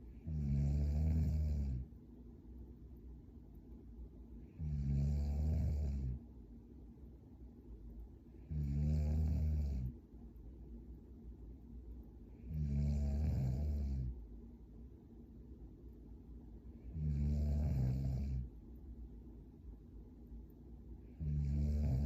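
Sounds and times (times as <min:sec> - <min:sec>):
woman snoring: 0:00.2 - 0:01.9, 0:04.6 - 0:06.2, 0:08.4 - 0:10.0, 0:12.4 - 0:14.1, 0:16.9 - 0:18.5, 0:21.2 - 0:22.0.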